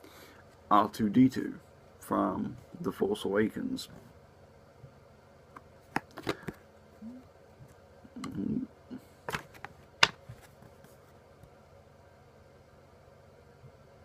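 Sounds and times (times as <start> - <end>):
cards clicking and tapping: 5.6 - 6.6, 9.3 - 10.5.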